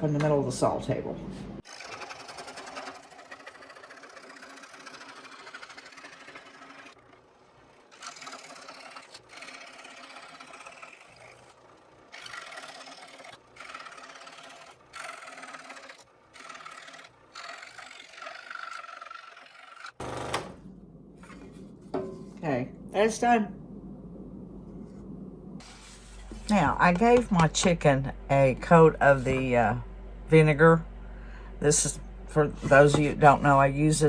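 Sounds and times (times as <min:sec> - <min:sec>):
scroll saw buzzing: 0:01.6 - 0:20.7.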